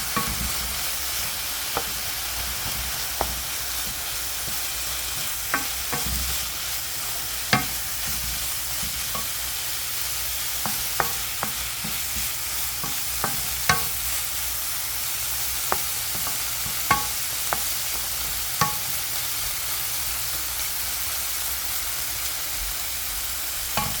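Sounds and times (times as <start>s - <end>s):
vegetables sizzling in a frying pan: 0.0s - 24.0s
utensil knocking against pan: 0.1s - 6.6s, 7.5s - 9.5s, 10.6s - 14.1s, 15.7s - 17.8s, 18.6s - 18.9s, 23.8s - 24.0s.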